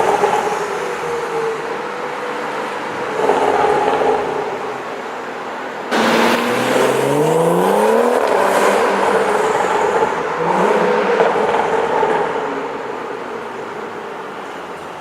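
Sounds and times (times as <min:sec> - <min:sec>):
car engine accelerating hard: 0:05.9 - 0:12.4.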